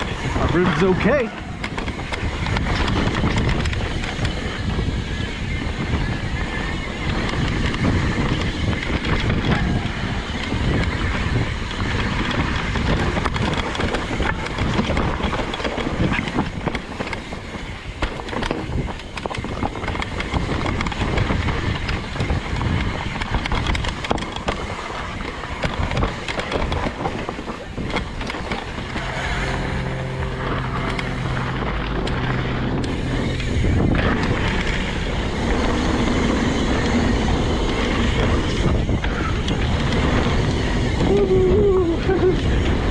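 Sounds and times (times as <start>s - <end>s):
bike chain and frame rattling: 0.0s - 42.9s
bike tyres on dirt and rock: 0.0s - 42.9s
wind rushing over microphone: 0.0s - 42.9s
low steady hum: 24.9s - 36.1s.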